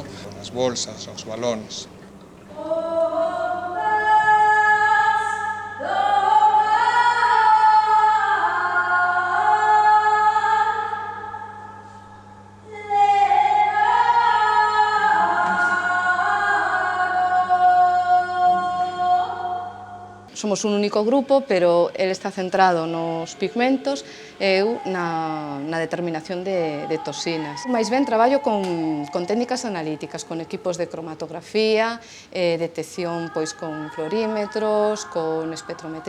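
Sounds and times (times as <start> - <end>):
a capella choir singing chords: 0.0 - 36.0
faint steady hum: 0.0 - 36.0.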